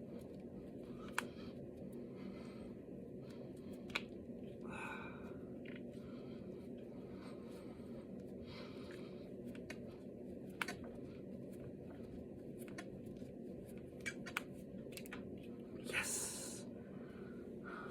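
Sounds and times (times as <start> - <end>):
knuckles cracking: 3.8 - 4.2, 8.9 - 9.9, 10.5 - 11.0, 12.6 - 15.3.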